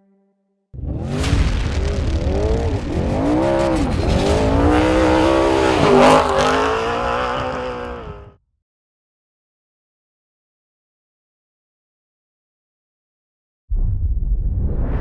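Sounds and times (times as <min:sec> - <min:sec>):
race vehicle engine revving: 0:00.8 - 0:08.4.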